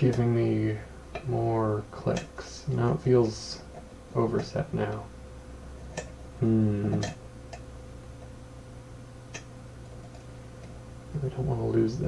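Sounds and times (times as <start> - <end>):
person humming: 6.4 - 7.2.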